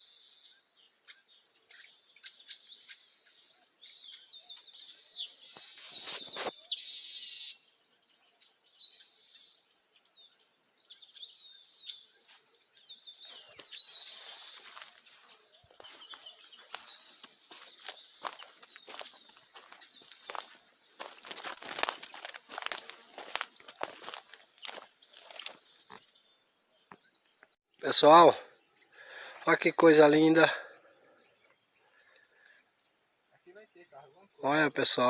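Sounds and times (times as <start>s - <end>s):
birds chirping and singing: 0.0s - 35.0s.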